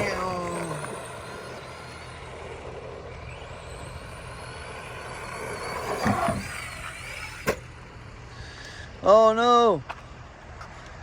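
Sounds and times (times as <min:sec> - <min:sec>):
tyres rumbling on pavement: 0:00.0 - 0:08.2
toy truck motor whining: 0:00.0 - 0:09.0.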